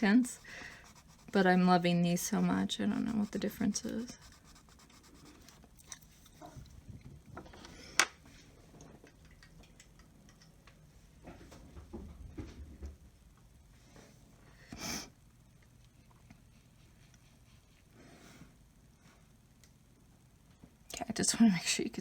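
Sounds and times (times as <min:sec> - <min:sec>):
pencil scratching on paper: 0:00.0 - 0:05.6.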